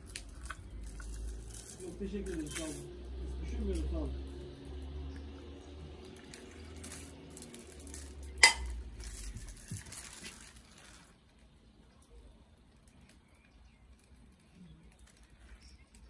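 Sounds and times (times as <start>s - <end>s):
hard objects clinking: 0.0s - 2.9s, 6.2s - 10.5s.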